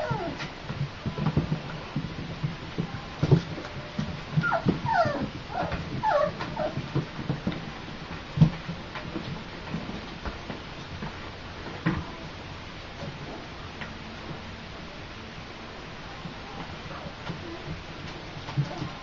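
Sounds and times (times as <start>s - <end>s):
puppies whimpering: 0.0s - 0.4s, 4.4s - 6.8s.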